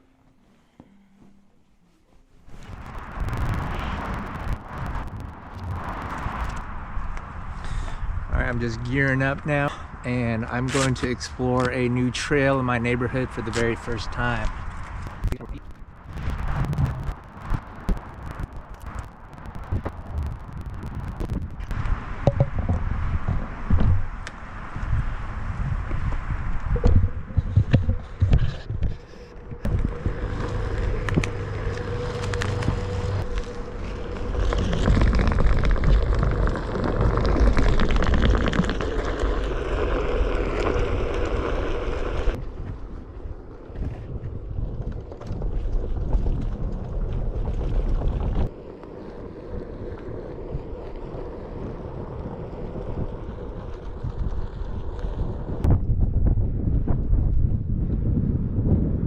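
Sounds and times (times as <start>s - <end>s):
steady hum: 0.0s - 45.2s
board rolling on trail: 2.3s - 59.0s
wind buffeting microphone: 2.5s - 59.0s.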